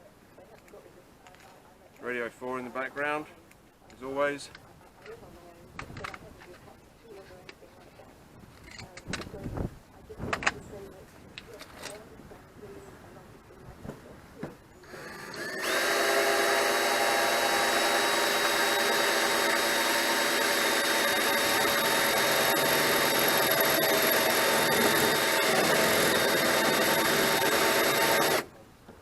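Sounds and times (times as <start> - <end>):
electric drill whining through steel: 14.8 - 28.5.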